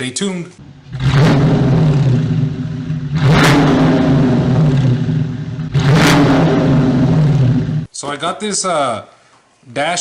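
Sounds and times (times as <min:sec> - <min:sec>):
car engine revving: 0:00.6 - 0:07.9.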